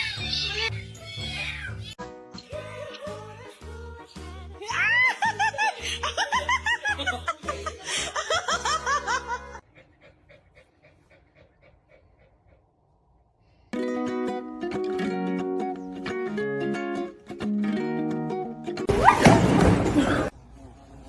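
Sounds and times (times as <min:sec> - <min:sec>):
dog yelping: 0:18.9 - 0:19.4.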